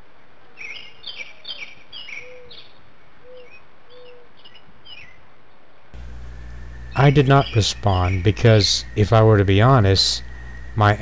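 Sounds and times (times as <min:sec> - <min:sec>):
birds chirping: 0:06.0 - 0:11.0
low soft bird notes: 0:06.0 - 0:11.0.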